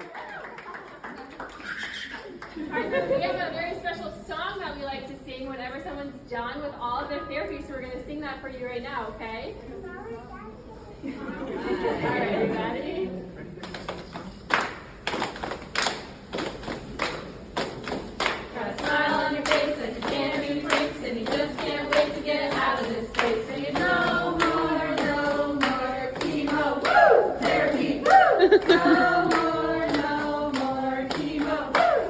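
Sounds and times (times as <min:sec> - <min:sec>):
people clapping along: 0:00.0 - 0:03.3, 0:13.6 - 0:32.0
group singing: 0:11.3 - 0:13.2, 0:18.5 - 0:32.0.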